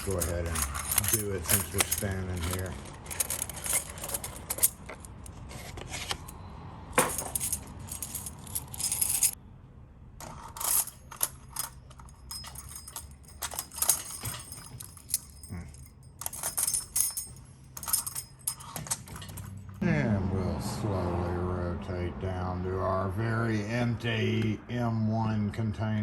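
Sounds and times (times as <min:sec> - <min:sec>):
metal keys jingling and clinking: 0:00.0 - 0:05.4, 0:07.0 - 0:09.4, 0:10.3 - 0:19.8.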